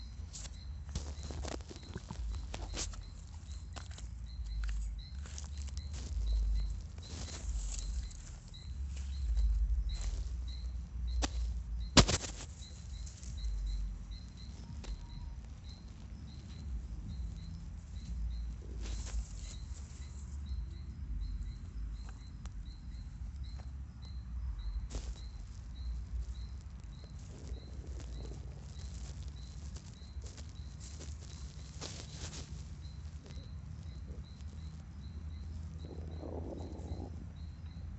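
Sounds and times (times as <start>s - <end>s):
stomach rumbling and gurgling: 0.9s - 10.6s, 24.9s - 37.9s
faint high chirp: 12.6s - 37.9s.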